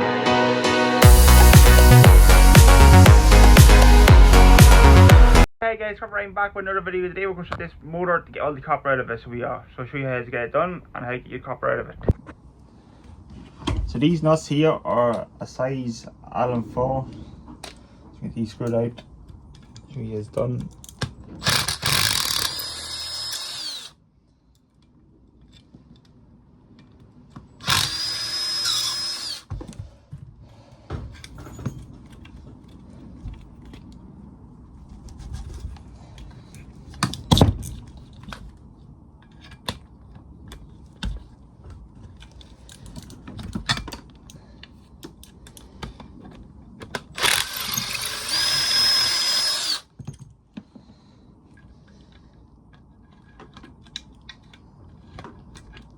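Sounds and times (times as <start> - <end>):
clicks and knocks of parts handled: 18.6 - 22.5, 34.9 - 48.0, 51.5 - 55.9
power drill whining: 21.4 - 23.9, 27.6 - 29.5, 47.2 - 49.9.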